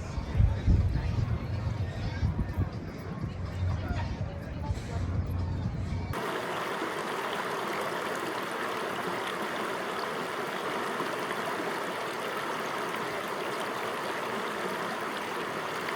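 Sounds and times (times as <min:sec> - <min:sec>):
flowing water rushing: 0:06.1 - 0:15.9.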